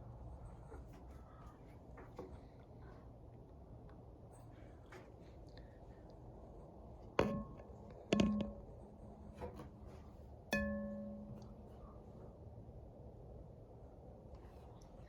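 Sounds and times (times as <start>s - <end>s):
metal fan housing ringing: 7.2s - 9.0s, 10.5s - 11.6s.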